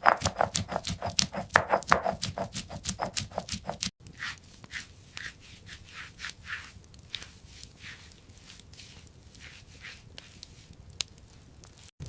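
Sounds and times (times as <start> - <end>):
fast sharp tapping: 0.0 - 3.9.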